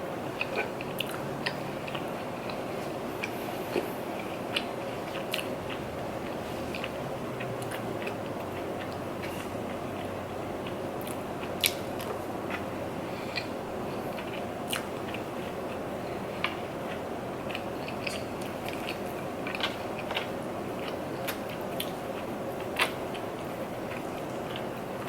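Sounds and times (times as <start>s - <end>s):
chewing and crunching food: 0.0s - 25.0s
steady background hiss: 0.0s - 25.0s.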